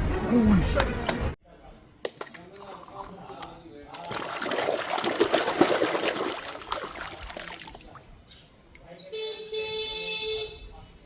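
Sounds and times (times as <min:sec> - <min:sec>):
water pouring and splashing: 0:02.1 - 0:08.2.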